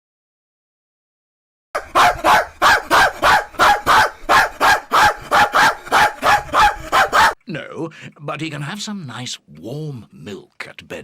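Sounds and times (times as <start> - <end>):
dog barking rapidly: 1.8 - 7.4.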